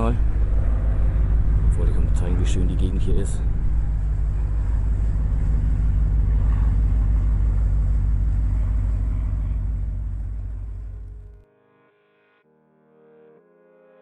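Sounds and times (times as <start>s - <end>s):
road traffic rumble on bridge: 0.0s - 11.4s
fast regular pulse: 0.2s - 11.4s.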